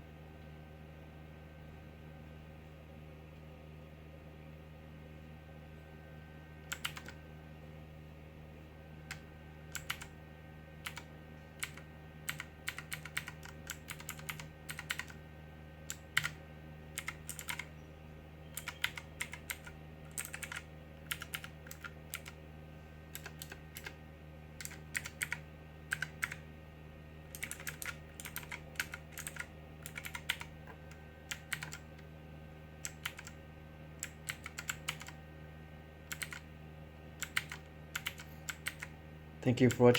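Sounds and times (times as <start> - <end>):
mechanical keyboard typing: 6.7 - 7.2, 9.1 - 10.2, 10.8 - 15.2, 15.9 - 16.4, 17.0 - 17.7, 18.6 - 22.4, 23.2 - 24.0, 24.6 - 26.4, 27.3 - 32.0, 32.8 - 33.4, 34.0 - 35.2, 36.1 - 36.4, 37.2 - 38.9, 39.6 - 39.9.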